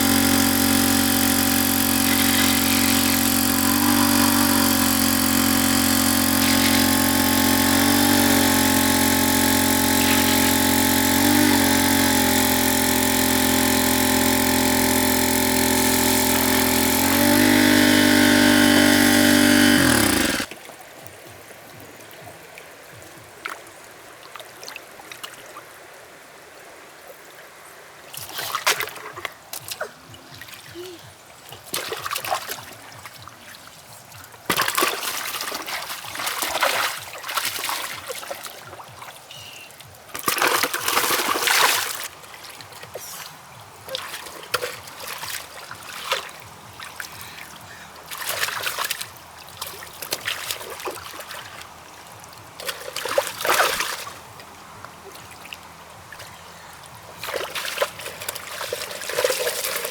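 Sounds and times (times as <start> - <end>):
muddy water sloshing and splashing: 28.1 - 59.9.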